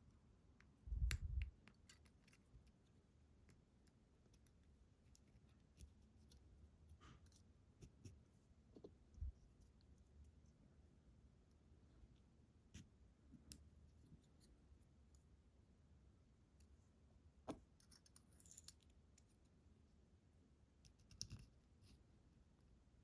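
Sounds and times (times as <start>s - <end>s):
small clicks of lock parts: 0.6s - 6.4s, 17.5s - 19.4s, 20.8s - 21.5s.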